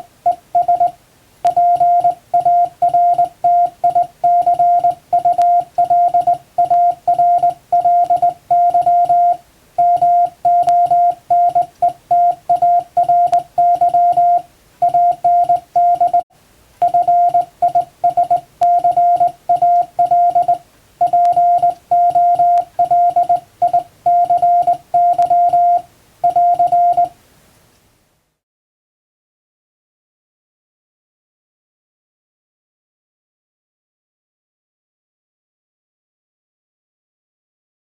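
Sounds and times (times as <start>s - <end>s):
morse code beeps: 0.0s - 16.2s, 16.8s - 27.2s.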